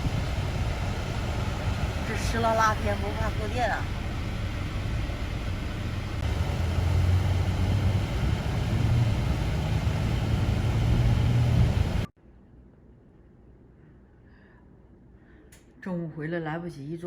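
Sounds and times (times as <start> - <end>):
car engine and road rumble: 0.0 - 12.1.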